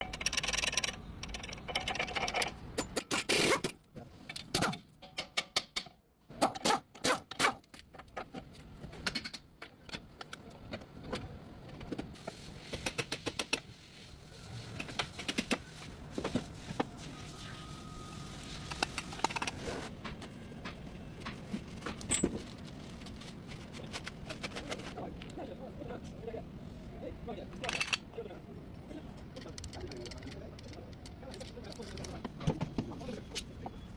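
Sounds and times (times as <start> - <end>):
metallic clicks and clanks of tools: 0.0 - 12.0, 21.8 - 22.5, 27.5 - 28.2.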